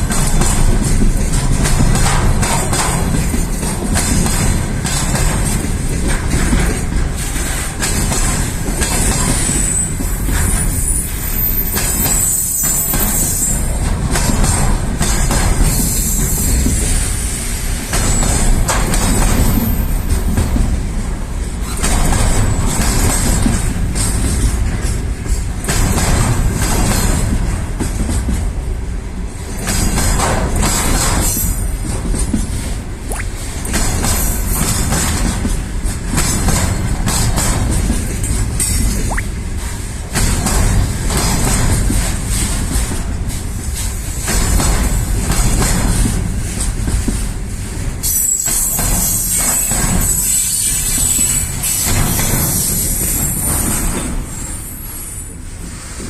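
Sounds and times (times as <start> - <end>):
train wheels clattering on rails: 0.0 - 56.0
wheel squeals: 9.3 - 13.8, 48.0 - 55.3.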